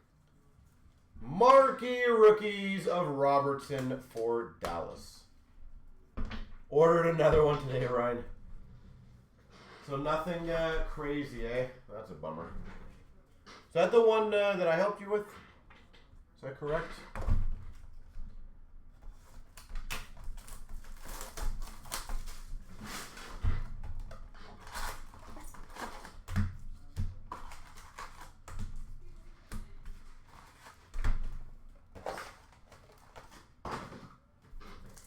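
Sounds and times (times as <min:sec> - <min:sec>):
card wrappers rustling and tearing: 0:19.2 - 0:23.4, 0:24.2 - 0:33.7.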